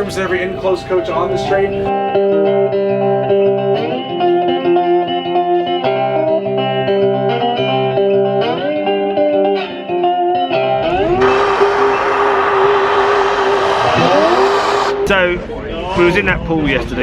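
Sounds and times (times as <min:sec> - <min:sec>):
guitar music: 0:00.0 - 0:15.7
steady noise: 0:10.9 - 0:16.4.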